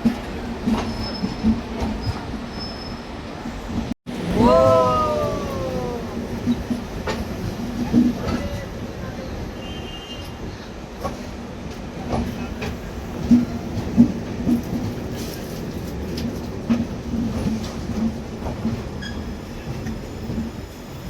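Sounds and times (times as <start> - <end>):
train coaches rolling past: 0.0 - 9.6.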